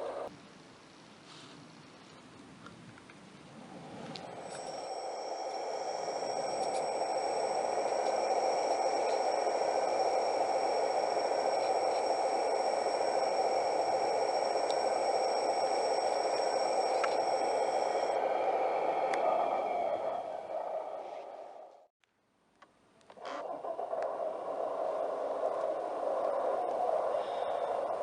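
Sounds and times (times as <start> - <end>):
suction unit rushing hum: 3.5 - 21.9
thin high whine: 3.6 - 21.9, 24.1 - 28.0.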